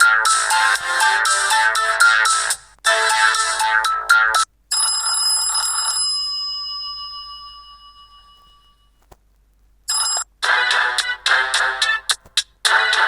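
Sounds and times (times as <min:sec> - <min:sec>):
bell-like phone ringtone: 0:00.0 - 0:09.0, 0:09.9 - 0:10.3.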